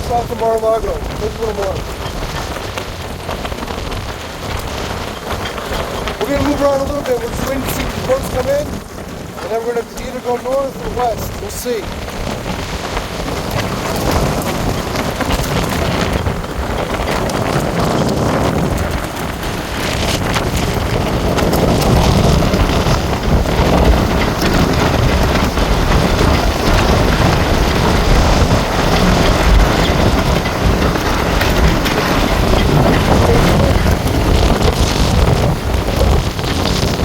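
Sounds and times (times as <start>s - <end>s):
strong wind on microphone: 0.0s - 37.0s.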